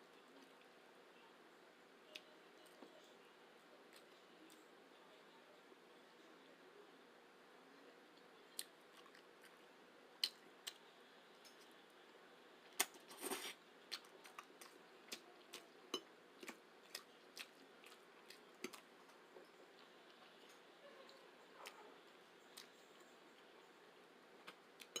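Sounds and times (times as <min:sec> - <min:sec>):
close-miked chewing: 0:08.2 - 0:11.8, 0:12.7 - 0:23.7.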